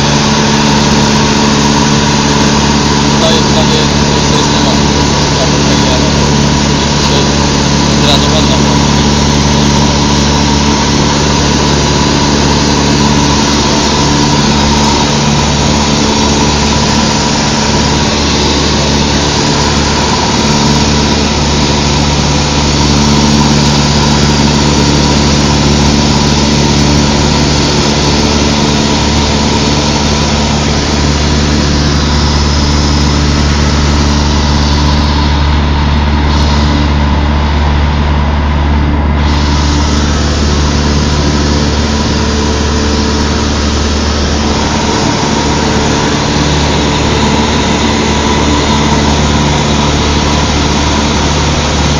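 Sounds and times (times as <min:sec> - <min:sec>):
propeller plane engine droning: 0:00.0 - 0:51.9.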